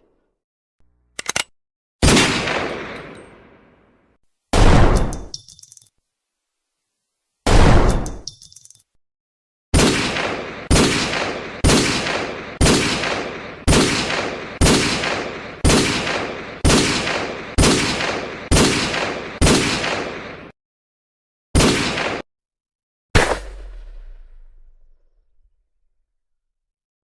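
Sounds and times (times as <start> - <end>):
pistol shots echoing: 2.0 - 3.1, 9.8 - 20.5, 21.6 - 22.2.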